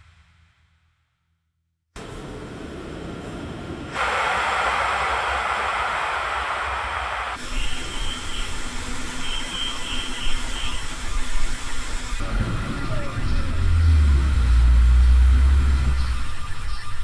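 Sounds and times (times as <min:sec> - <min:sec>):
heavy engine rumbling: 0:12.2 - 0:16.7.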